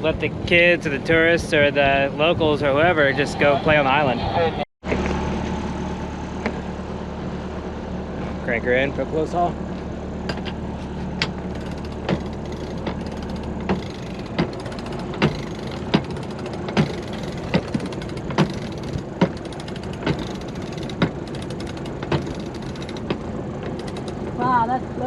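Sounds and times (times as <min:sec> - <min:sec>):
winch pawls ratcheting: 0:11.2 - 0:24.4.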